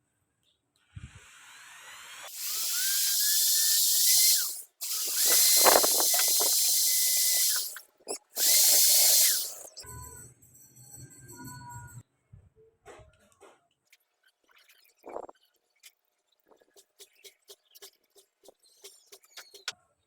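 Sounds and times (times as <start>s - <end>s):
circular saw whining: 1.0s - 9.9s.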